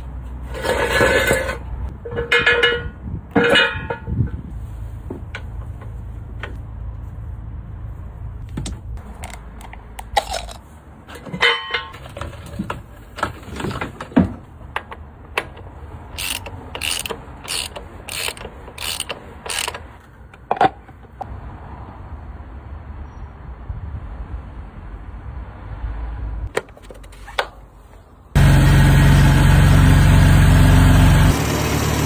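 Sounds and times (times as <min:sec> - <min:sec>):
tool clicks: 0:15.4 - 0:20.0
ratchet wrench strokes: 0:16.1 - 0:19.9.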